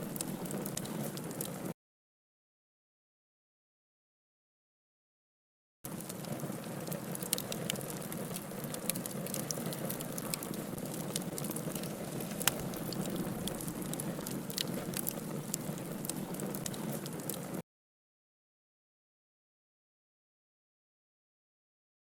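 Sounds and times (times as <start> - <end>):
campfire crackling and popping: 0.0 - 1.7, 5.9 - 17.6.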